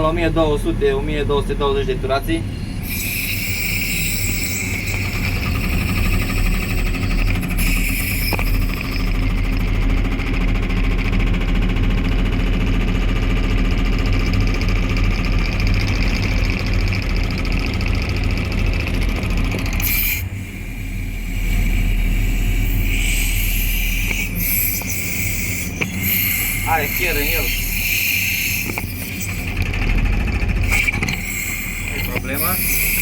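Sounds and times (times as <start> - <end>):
diesel engine running: 0.0 - 33.0
hydraulic breaker hammering concrete: 21.3 - 33.0.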